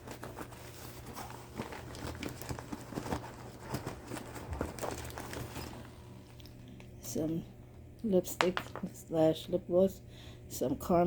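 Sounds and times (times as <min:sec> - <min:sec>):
bag rustling: 0:00.0 - 0:06.1.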